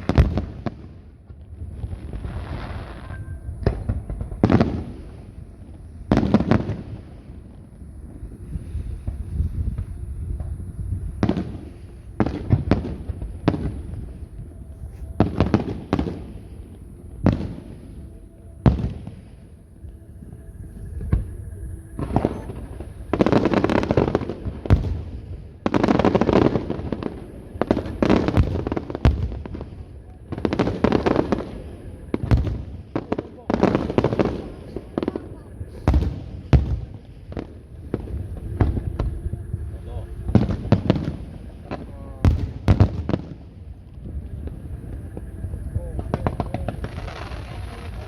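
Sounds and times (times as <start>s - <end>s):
firework bangs: 0.0s - 14.4s, 22.0s - 48.0s
firework crackling bursts: 0.0s - 48.0s.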